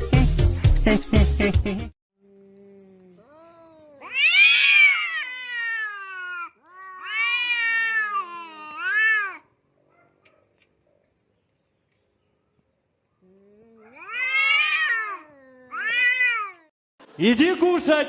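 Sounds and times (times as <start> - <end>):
cat yowling: 3.2 - 9.6, 13.6 - 16.7.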